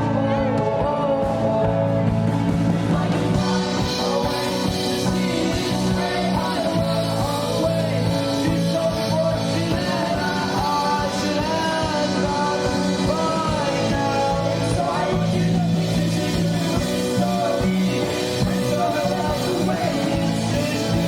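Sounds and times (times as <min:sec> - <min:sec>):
person singing: 0:00.0 - 0:21.0
rock band playing live: 0:00.0 - 0:21.0.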